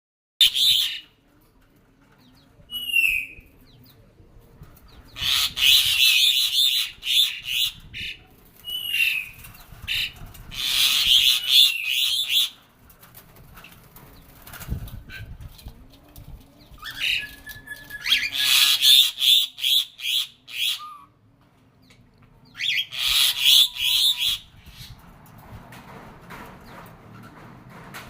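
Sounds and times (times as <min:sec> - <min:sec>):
songbird chirping and trilling: 0:00.4 - 0:01.2, 0:02.1 - 0:12.6, 0:15.1 - 0:25.1.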